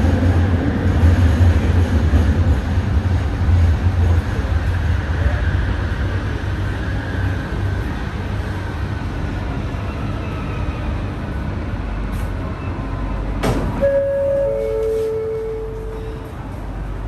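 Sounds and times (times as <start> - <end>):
metro train rumbling: 0.0 - 17.0
sharp clunk: 13.4 - 15.1
steady chime tone: 13.8 - 16.4.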